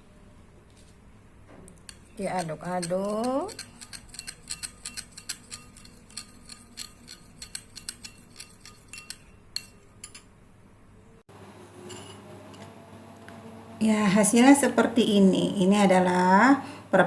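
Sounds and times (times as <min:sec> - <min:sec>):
spoon clinking against bowl: 0:01.8 - 0:10.3.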